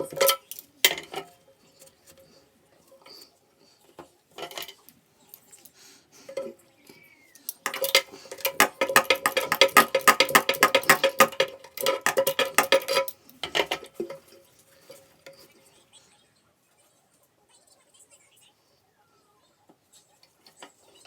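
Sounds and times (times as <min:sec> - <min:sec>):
small hard objects clicking and rattling: 0:00.0 - 0:01.4, 0:07.4 - 0:15.4.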